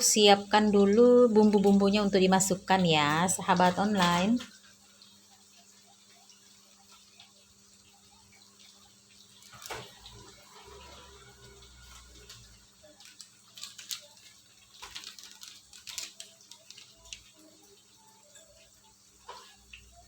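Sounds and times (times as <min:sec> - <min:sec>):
faint watery noise: 0:00.0 - 0:20.0
utensils and containers clinking: 0:03.0 - 0:04.5.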